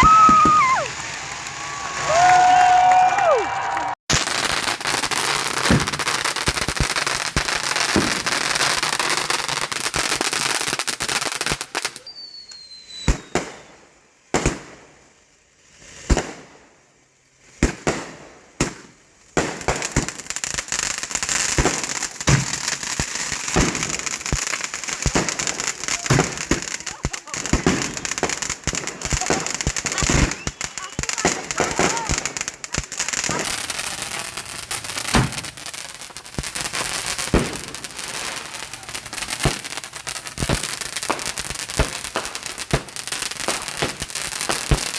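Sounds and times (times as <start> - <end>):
fireworks crackling pops: 0.0 - 44.9
fireworks sharp bangs: 4.1 - 10.1, 21.0 - 44.9
falling whistle: 12.0 - 13.7, 30.1 - 31.0.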